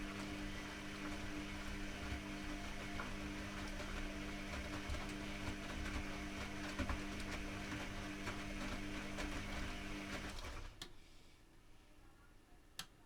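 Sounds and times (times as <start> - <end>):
washing machine humming: 0.0 - 10.8.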